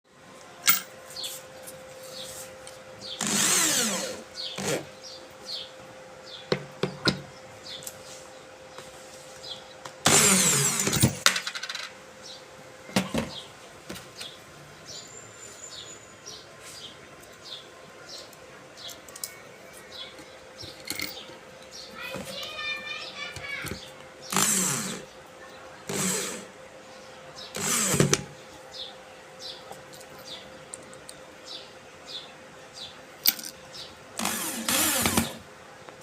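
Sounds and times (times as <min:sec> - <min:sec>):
electric drill whirring: 0:03.2 - 0:04.9, 0:10.0 - 0:11.2, 0:24.3 - 0:25.0, 0:25.9 - 0:26.5, 0:27.6 - 0:28.3, 0:34.2 - 0:35.4
handling clicks and knocks: 0:18.8 - 0:21.4.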